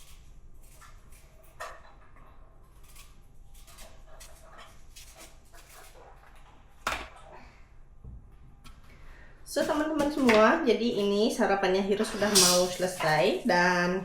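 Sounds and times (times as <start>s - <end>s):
knife on cutting board: 12.2s - 13.2s.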